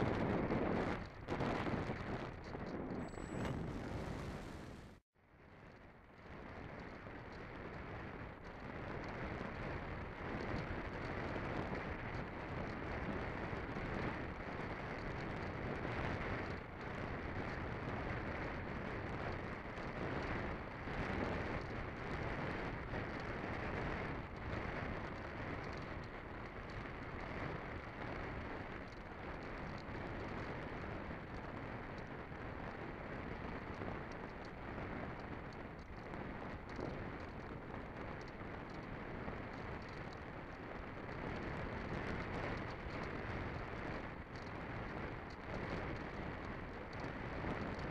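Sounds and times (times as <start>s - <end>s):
wind rush on microphone: 0.0s - 5.0s, 5.7s - 47.9s.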